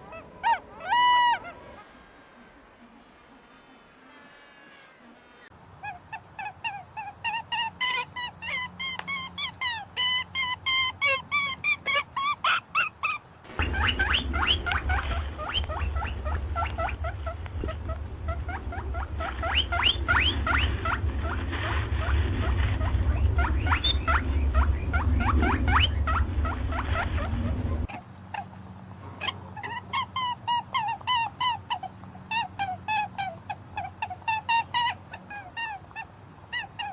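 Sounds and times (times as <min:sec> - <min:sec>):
steady low rumbling noise: 0:13.5 - 0:27.9.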